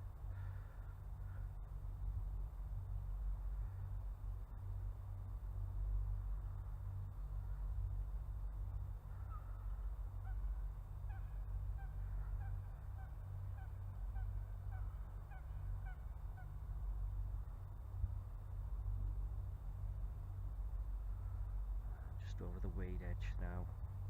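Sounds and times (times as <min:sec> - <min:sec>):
wind rumble on microphone: 0:00.0 - 0:24.0
geese honking: 0:09.1 - 0:16.6.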